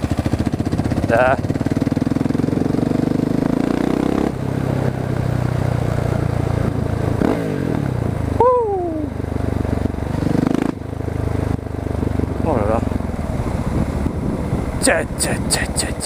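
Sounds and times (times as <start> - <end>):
motorcycle engine running: 0.0 - 16.0.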